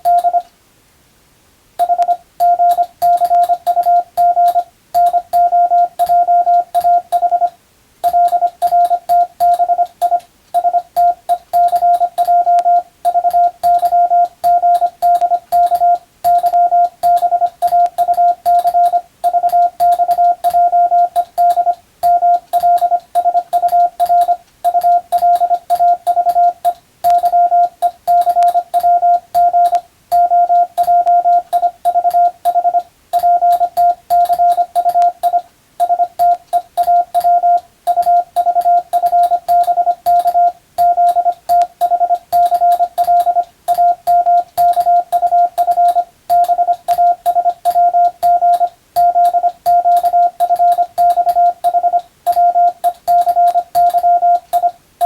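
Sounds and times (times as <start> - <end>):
morse code beeps: 0.0 - 0.5, 1.8 - 54.8.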